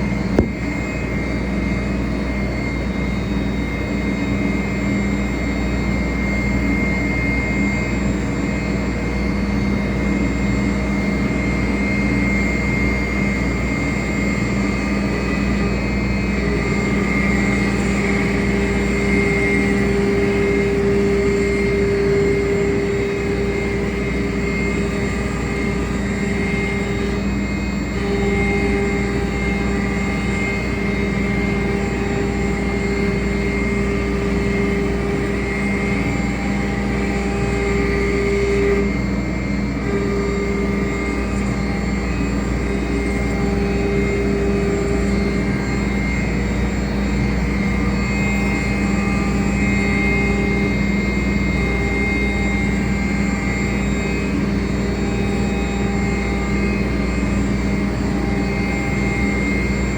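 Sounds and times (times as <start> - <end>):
cnc router whining: 0.0 - 59.9.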